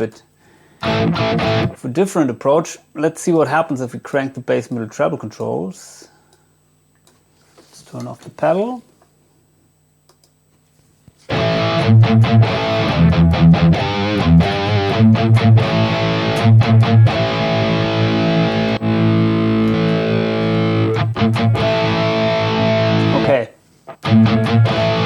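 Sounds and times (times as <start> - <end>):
distorted electric guitar riff: 0.8 - 1.8, 11.3 - 25.0.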